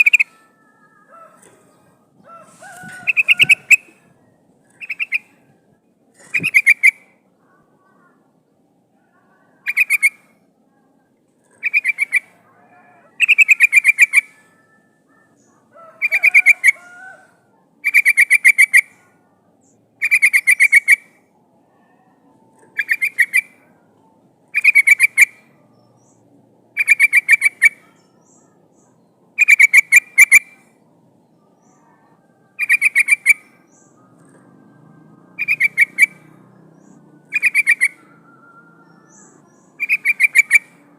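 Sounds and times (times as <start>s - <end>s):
bird calling with bubbling notes: 4.7s - 5.4s, 6.3s - 7.1s, 11.6s - 14.3s, 37.3s - 38.0s, 39.8s - 40.7s.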